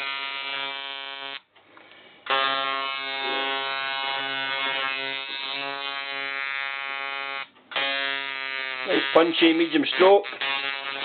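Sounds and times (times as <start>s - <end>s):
tattoo machine buzzing: 0.0s - 1.5s, 2.3s - 11.0s.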